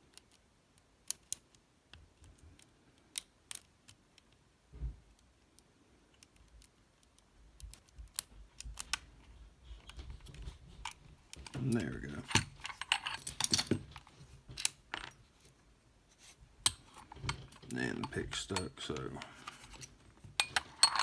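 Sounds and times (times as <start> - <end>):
lock pick clicking and scraping: 9.8 - 15.5, 16.6 - 21.0.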